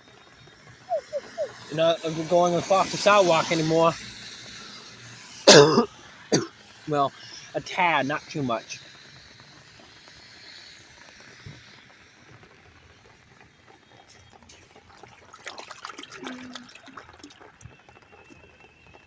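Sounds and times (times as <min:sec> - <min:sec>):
small clicks and splashes: 0:08.8 - 0:19.0
water trickling from drain pipe: 0:14.1 - 0:17.7.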